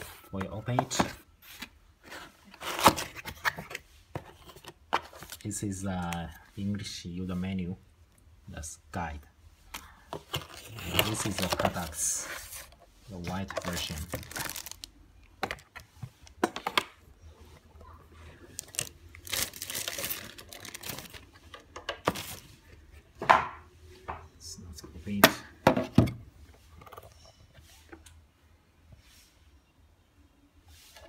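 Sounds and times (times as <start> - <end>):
packaging rustling: 10.2 - 16.8, 18.4 - 22.5.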